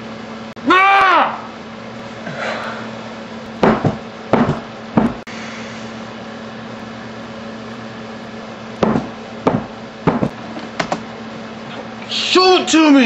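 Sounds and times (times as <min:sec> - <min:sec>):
low electrical hum: 0:00.0 - 0:13.0
sharp knocks on hard surface: 0:03.6 - 0:05.2, 0:08.8 - 0:11.0.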